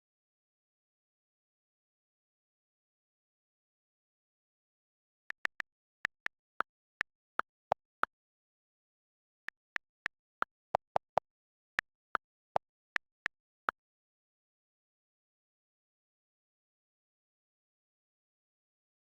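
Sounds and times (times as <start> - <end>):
sharp electronic clicks: 5.3 - 7.8.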